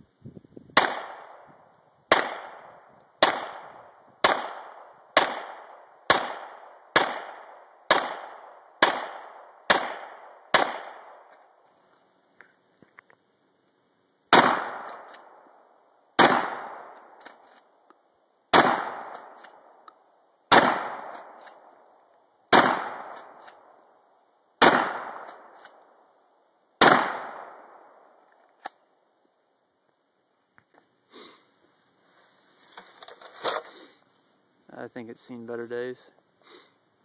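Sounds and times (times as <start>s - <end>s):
echoing gunshots: 0.8s - 1.5s, 2.1s - 11.3s, 14.3s - 15.4s, 16.2s - 17.2s, 18.5s - 19.7s, 20.5s - 21.6s, 22.5s - 23.8s, 24.6s - 25.6s, 26.8s - 28.1s.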